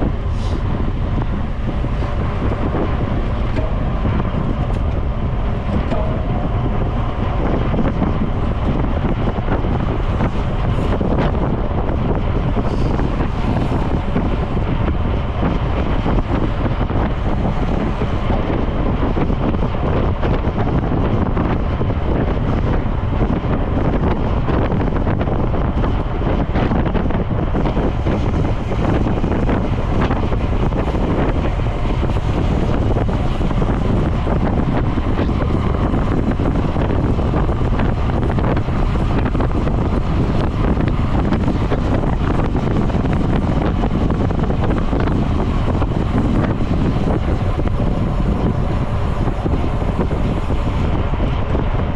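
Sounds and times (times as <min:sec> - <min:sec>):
wind buffeting microphone: 0:00.0 - 0:51.9.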